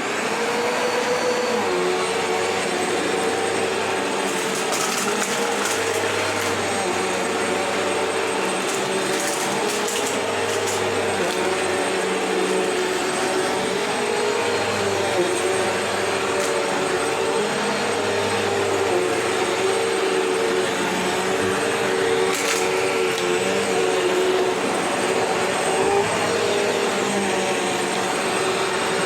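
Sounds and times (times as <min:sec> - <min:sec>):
vacuum cleaner motor hum: 0:00.0 - 0:29.0.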